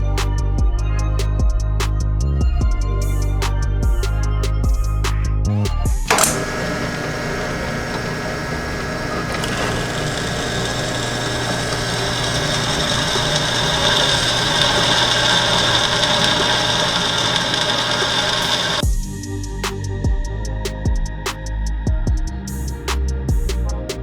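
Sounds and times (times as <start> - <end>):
angle grinder cutting steel: 6.1 - 18.8.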